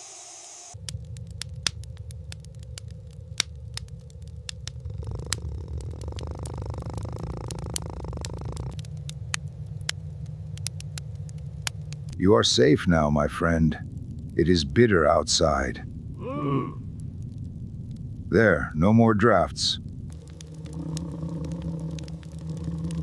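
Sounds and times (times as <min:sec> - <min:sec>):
hissing noise: 0:00.0 - 0:01.0
sharp crackles and clicks: 0:00.5 - 0:23.0
steady low rumble: 0:00.7 - 0:23.0.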